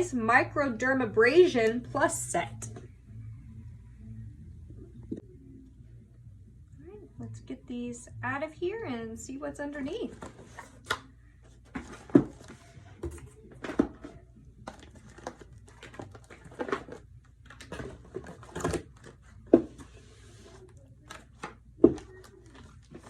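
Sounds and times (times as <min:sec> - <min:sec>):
packaging rustling: 0:13.6 - 0:19.3.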